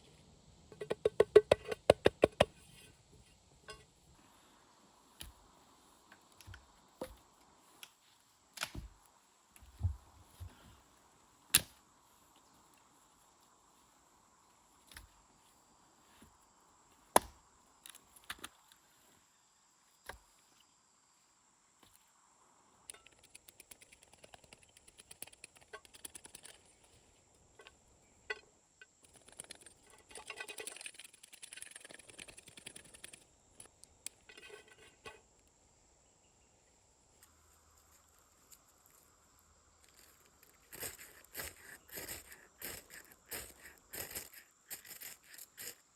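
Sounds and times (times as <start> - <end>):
small crackles and rustles: 37.1 - 45.9.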